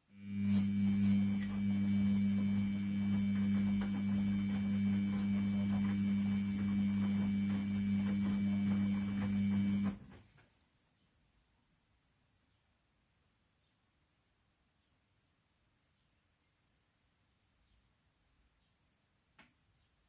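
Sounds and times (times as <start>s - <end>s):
washing machine motor hum: 0.0s - 10.2s.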